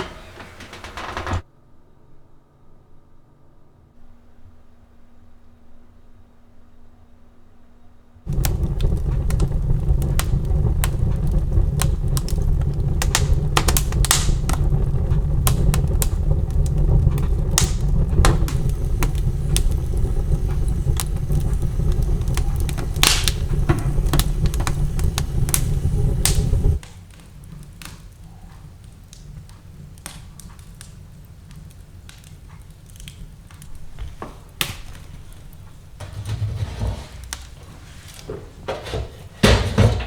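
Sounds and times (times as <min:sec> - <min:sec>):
appliance switch: 0:00.0 - 0:01.4
clicks and rattles: 0:00.0 - 0:01.4
electric appliance running: 0:08.3 - 0:26.8.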